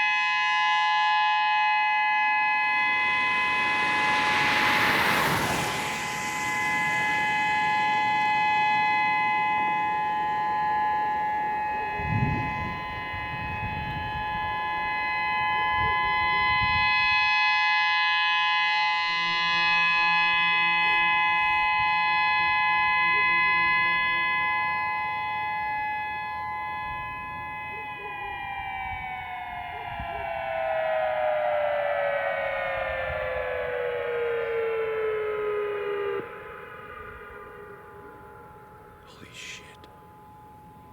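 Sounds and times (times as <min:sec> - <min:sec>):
warning sirens steady tone: 0:00.0 - 0:40.9
passing vehicle rumble: 0:02.5 - 0:11.4.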